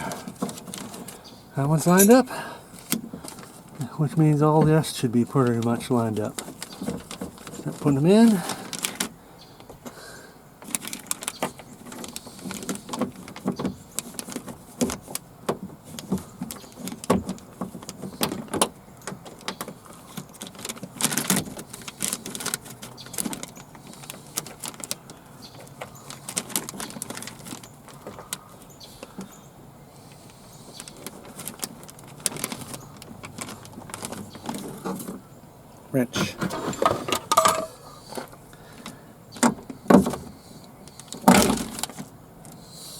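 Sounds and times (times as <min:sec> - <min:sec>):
metallic clicks and clinks of tools: 0:01.9 - 0:02.2.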